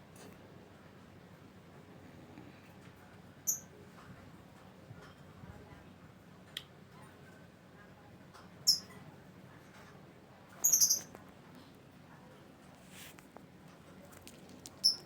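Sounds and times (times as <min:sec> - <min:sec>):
bird chirping shrilly: 0:10.6 - 0:11.0.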